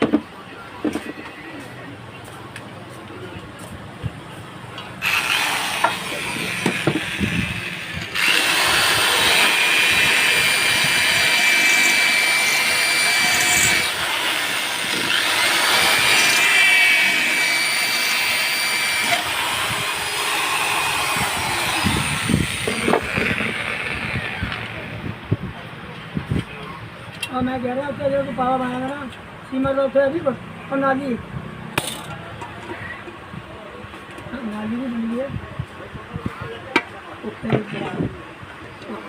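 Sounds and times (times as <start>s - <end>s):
power tool whining: 5.0s - 25.2s.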